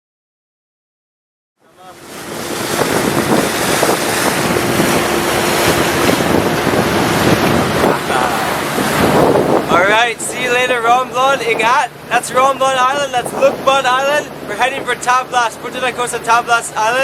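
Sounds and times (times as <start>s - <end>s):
water rushing past boat: 1.6s - 17.0s
wind buffeting microphone: 1.9s - 15.4s.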